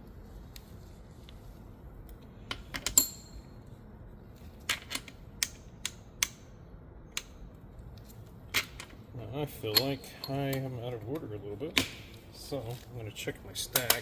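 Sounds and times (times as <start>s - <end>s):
metal parts clicking and clinking: 2.5s - 3.6s, 4.4s - 6.4s, 9.6s - 10.7s.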